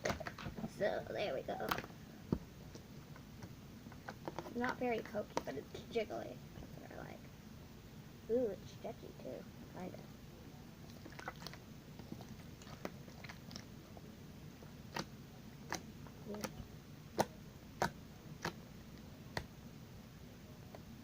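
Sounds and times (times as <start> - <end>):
faint low hum: 0.0 - 21.0
wet clicks and pops: 14.9 - 15.1, 17.2 - 19.5.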